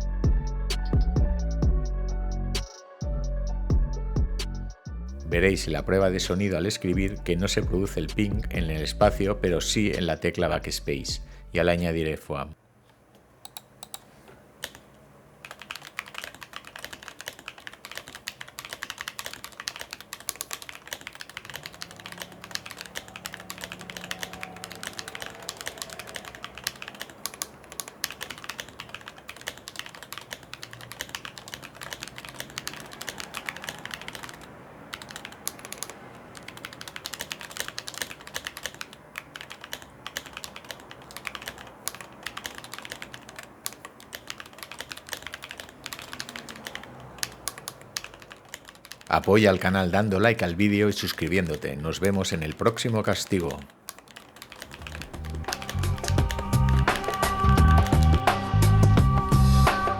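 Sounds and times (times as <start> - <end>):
mechanical keyboard typing: 13.4 - 59.9.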